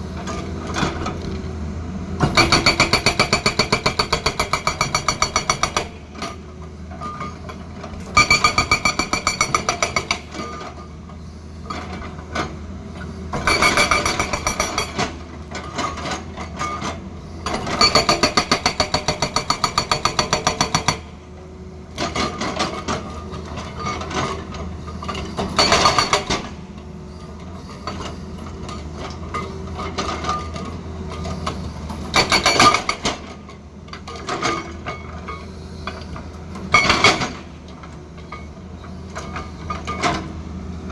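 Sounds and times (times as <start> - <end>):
excavator engine humming: 0.0 - 40.9
hydraulic breaker hammering stone: 2.2 - 6.3, 8.1 - 10.5, 13.3 - 16.8, 17.5 - 21.2, 25.4 - 26.6, 32.1 - 33.4.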